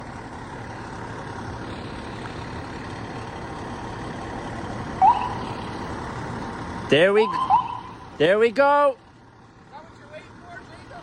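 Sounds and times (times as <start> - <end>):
fire truck engine idling: 0.0 - 11.0
electronic siren chirp: 7.3 - 7.9.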